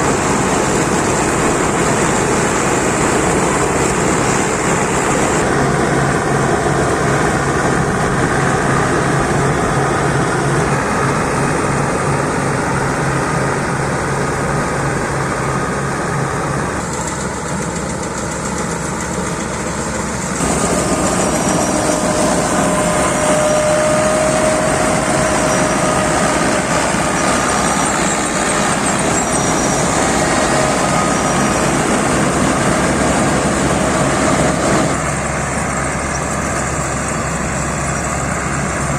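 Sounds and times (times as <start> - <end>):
combine harvester running: 0.0 - 38.9.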